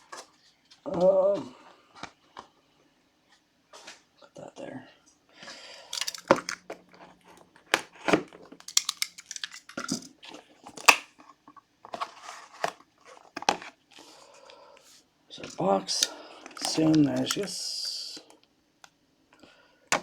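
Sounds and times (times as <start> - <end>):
plastic wrap crinkling: 5.9 - 11.2, 15.8 - 17.6.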